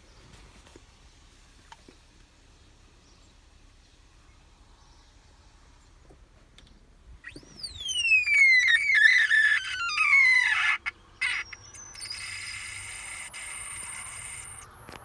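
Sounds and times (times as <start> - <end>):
high-pitched engine screech: 7.2 - 14.8.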